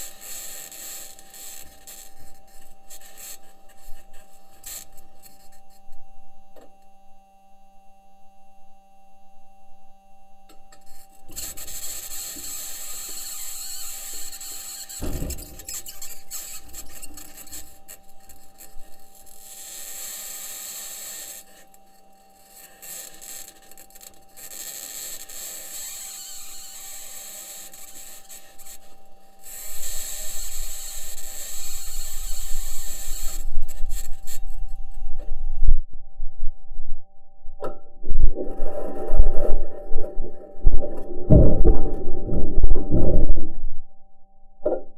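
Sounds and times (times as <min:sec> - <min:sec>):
faint steady hum: 0:00.0 - 0:44.9
high-pitched scratching noise: 0:10.9 - 0:21.5, 0:25.9 - 0:35.3.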